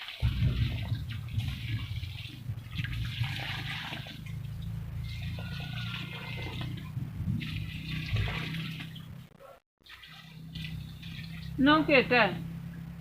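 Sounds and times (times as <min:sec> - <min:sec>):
water splashing into soil: 0:00.0 - 0:09.1, 0:09.8 - 0:12.0
steady low rumble: 0:00.2 - 0:05.5, 0:06.4 - 0:09.4.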